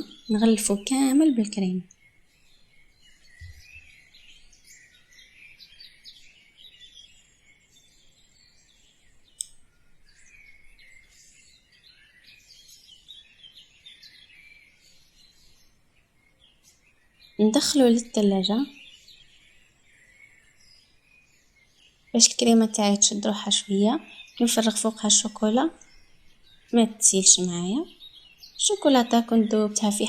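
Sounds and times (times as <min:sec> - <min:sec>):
birds chirping: 0:00.0 - 0:30.0.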